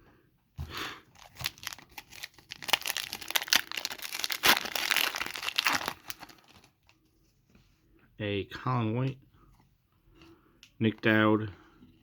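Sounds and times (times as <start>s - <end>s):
card pack wrapper crinkling and tearing: 1.1s - 6.7s.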